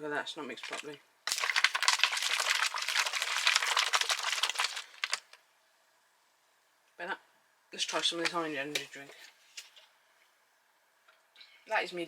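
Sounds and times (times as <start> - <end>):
utensil scraping in food pouch: 0.6 - 5.3.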